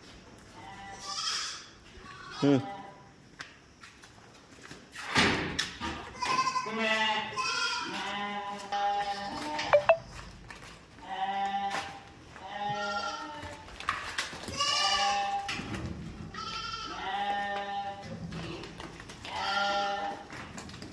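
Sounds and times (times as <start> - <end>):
goats bleating: 0.6 - 2.9, 6.2 - 9.7, 11.0 - 13.6, 14.5 - 15.5, 16.3 - 18.1, 19.2 - 20.3.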